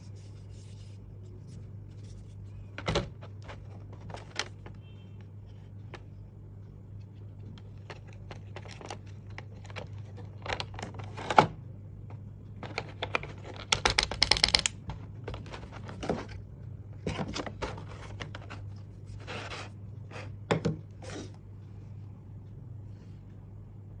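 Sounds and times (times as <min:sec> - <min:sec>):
steady low hum: 0:00.0 - 0:24.0
card and plastic rustling: 0:02.0 - 0:04.9, 0:07.4 - 0:11.5, 0:12.6 - 0:16.4, 0:17.0 - 0:19.7
clicks and taps unpacking: 0:02.7 - 0:06.1, 0:07.4 - 0:16.4.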